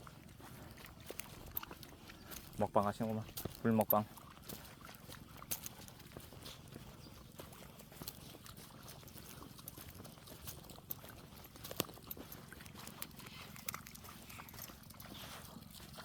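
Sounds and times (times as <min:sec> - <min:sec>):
dog lapping water: 0:00.0 - 0:16.0.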